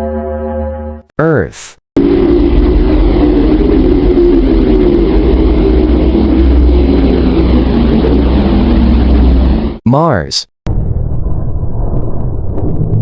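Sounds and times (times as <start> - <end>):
deep bass rumble: 2.0 - 9.8, 10.7 - 13.0
loud dense rumbling drone: 2.0 - 9.8
wavering hum: 2.0 - 9.8.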